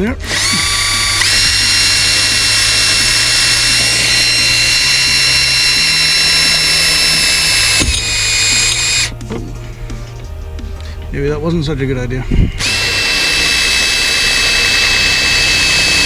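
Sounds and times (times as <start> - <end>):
power drill motor whine: 0.0 - 9.2, 12.5 - 16.0.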